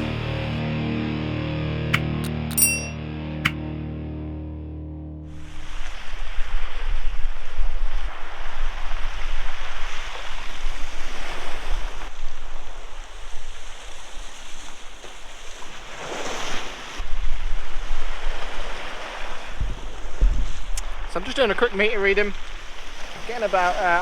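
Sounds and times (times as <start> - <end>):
sea waves breaking: 5.4 - 24.0
wind buffeting microphone: 5.5 - 14.3, 17.0 - 21.1.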